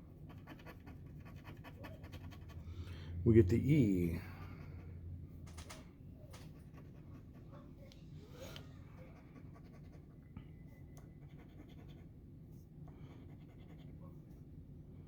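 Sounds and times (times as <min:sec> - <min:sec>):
low room hum: 0:00.0 - 0:15.0.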